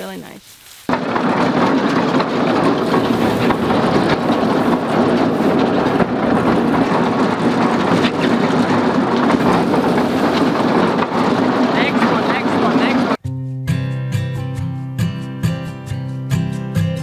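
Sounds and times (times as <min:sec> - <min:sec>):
baler knocking: 0:00.9 - 0:13.2
tractor engine under load: 0:00.9 - 0:13.2.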